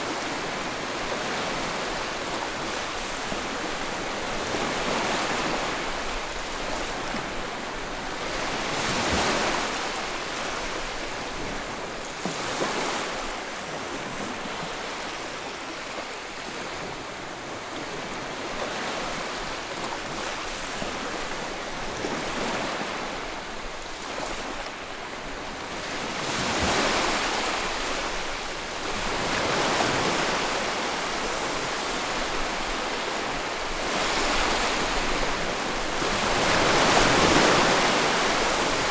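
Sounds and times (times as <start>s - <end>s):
ocean waves breaking on shore: 0.0s - 38.9s.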